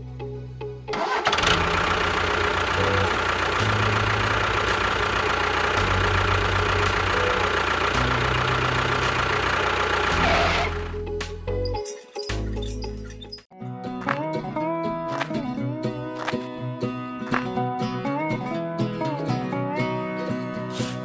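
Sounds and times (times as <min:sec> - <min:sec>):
engine running: 0:00.9 - 0:11.2
background music: 0:10.1 - 0:21.0.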